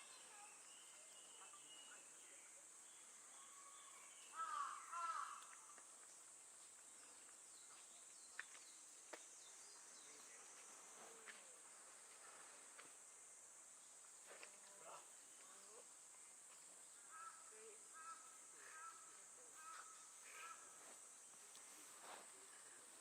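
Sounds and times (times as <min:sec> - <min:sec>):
crow cawing: 0:04.3 - 0:05.7, 0:17.1 - 0:20.7
faint clicks: 0:05.3 - 0:06.2.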